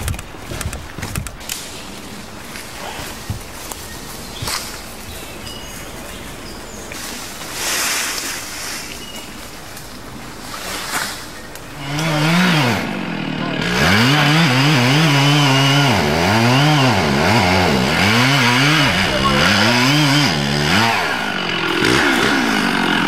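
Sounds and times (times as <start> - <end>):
chainsaw engine revving: 11.8 - 23.0.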